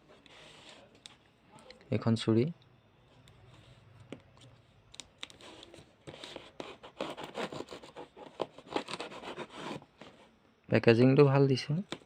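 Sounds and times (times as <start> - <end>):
knife scraping packaging: 5.2 - 10.2.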